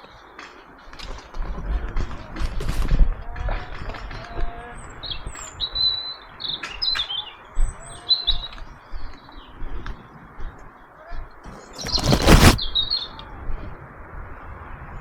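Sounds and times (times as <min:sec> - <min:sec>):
small birds chirping: 0:04.5 - 0:13.3.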